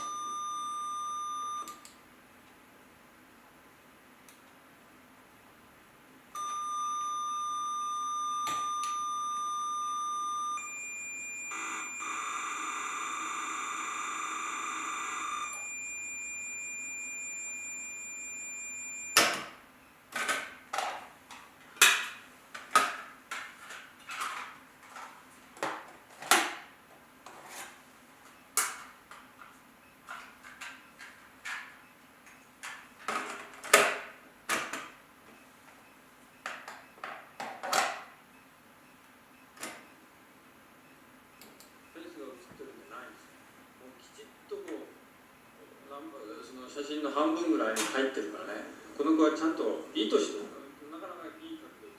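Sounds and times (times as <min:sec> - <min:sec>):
steady high beep: 0:00.0 - 0:01.7, 0:06.4 - 0:19.3.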